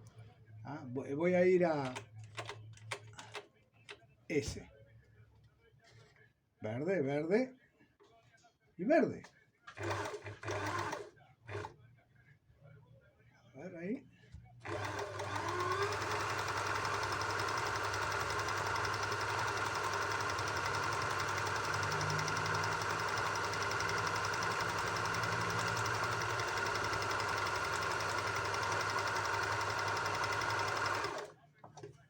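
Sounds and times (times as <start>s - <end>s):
sewing machine clattering: 9.7s - 11.7s, 14.6s - 31.3s.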